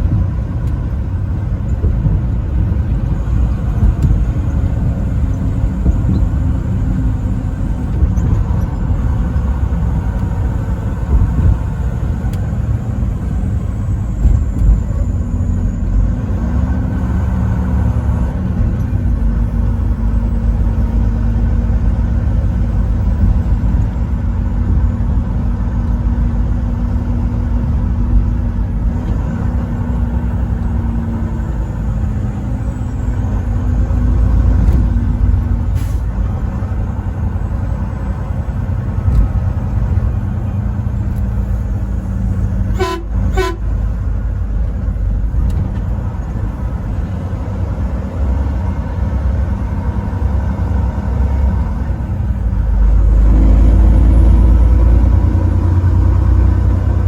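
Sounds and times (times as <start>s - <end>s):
road noise: 0.0s - 57.0s
truck engine drone: 0.0s - 57.0s
horn toots: 42.7s - 43.7s.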